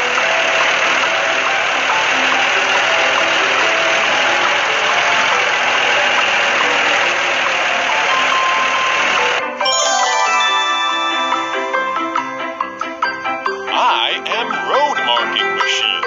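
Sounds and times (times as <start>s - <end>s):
construction machine engine running: 0.0s - 9.6s
faint short musical notes: 8.1s - 13.8s.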